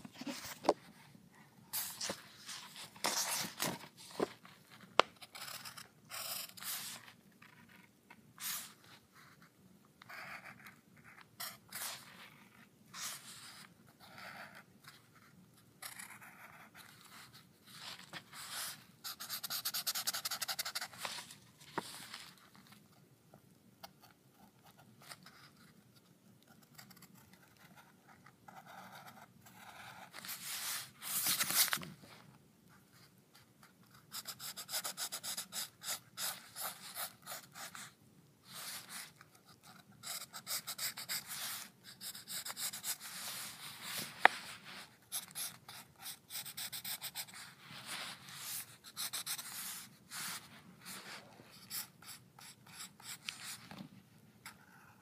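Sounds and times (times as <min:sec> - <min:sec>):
pencil scratching on paper: 0:05.2 - 0:21.3, 0:23.9 - 0:31.6, 0:33.8 - 0:37.9, 0:38.5 - 0:53.8.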